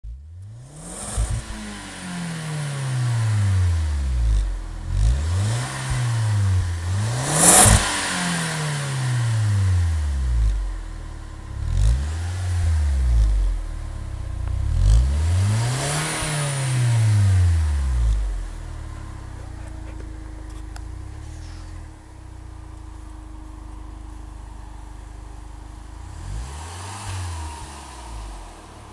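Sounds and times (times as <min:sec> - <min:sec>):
car engine revving: 0:00.3 - 0:28.9
exhaust pop: 0:04.0 - 0:26.6.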